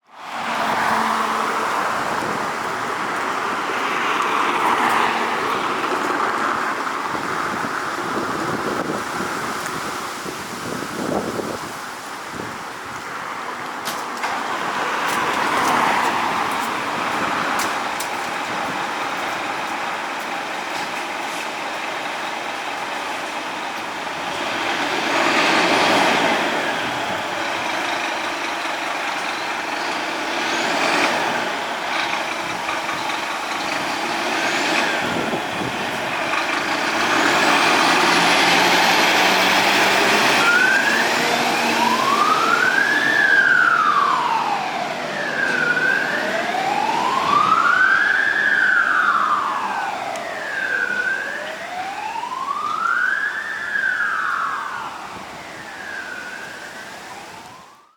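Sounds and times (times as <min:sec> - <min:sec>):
diesel engine running: 0:14.2 - 0:52.1
siren wailing: 0:23.9 - 0:57.9.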